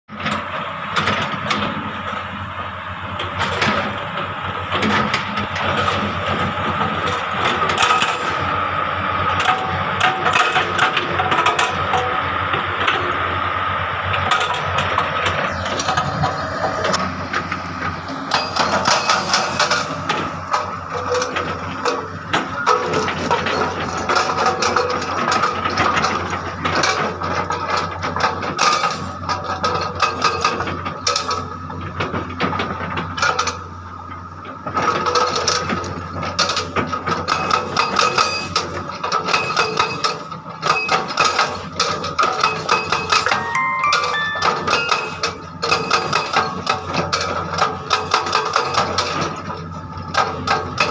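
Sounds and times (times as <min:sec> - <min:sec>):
excavator engine running: 0:00.1 - 0:43.3
hydraulic breaker hammering rock: 0:36.4 - 0:38.6.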